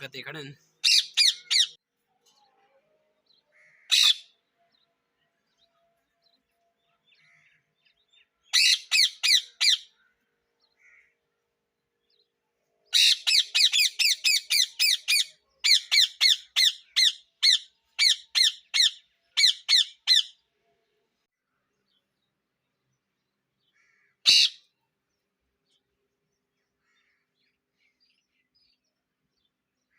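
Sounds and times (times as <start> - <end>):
parrot squawking: 0.8 - 1.8, 3.9 - 4.3, 8.5 - 9.9, 13.0 - 20.4, 24.2 - 24.6.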